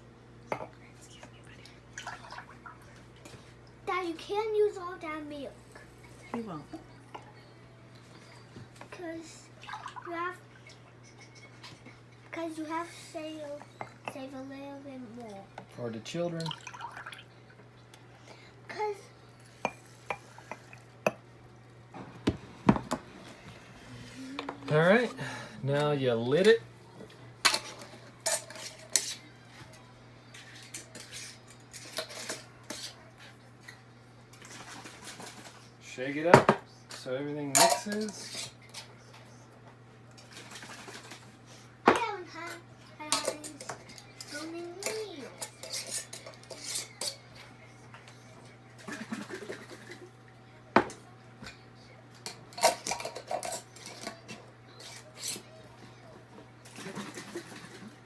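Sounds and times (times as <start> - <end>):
container knocking on counter: 22.1 - 23.1.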